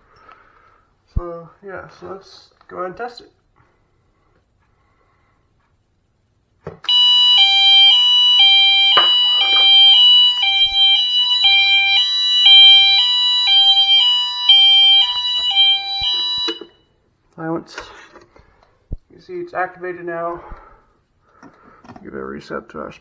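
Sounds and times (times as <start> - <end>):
high-low alarm tone: 6.9 - 16.8
steady shrill tone: 6.9 - 16.8.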